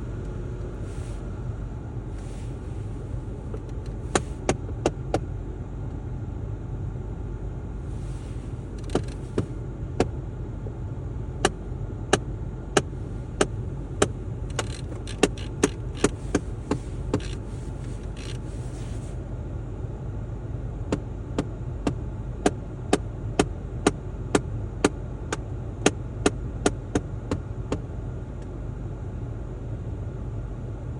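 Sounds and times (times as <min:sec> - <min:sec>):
car running hum: 0:00.0 - 0:30.9.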